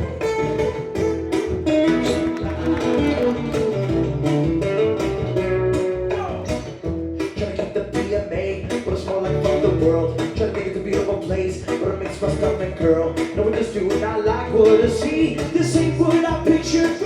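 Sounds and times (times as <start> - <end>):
guitar strumming and picking: 0.0 - 17.0
person singing: 7.2 - 17.0.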